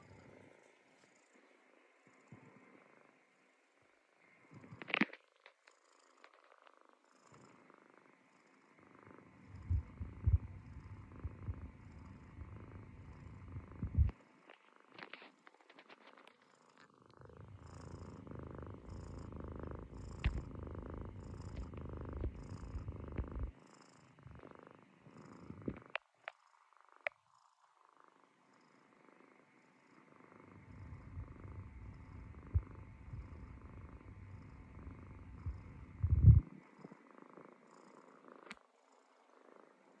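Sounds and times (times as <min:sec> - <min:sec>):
kitten snoring: 0:04.4 - 0:40.0.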